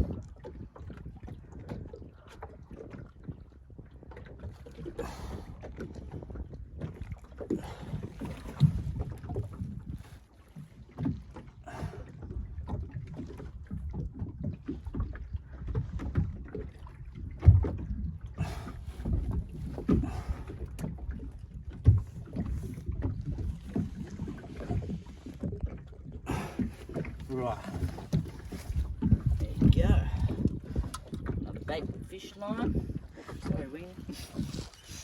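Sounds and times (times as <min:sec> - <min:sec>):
gear knocking in boat: 0:00.0 - 0:35.0
water slapping against boat hull: 0:00.0 - 0:35.0
wind on microphone: 0:00.0 - 0:35.0.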